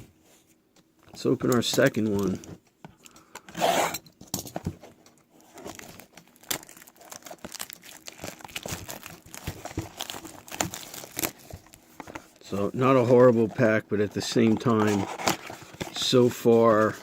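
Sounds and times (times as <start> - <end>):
card packaging crinkling: 5.3 - 17.0.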